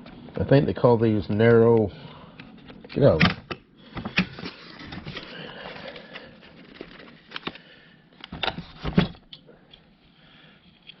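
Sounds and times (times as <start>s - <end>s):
packaging rustle: 4.0s - 7.7s.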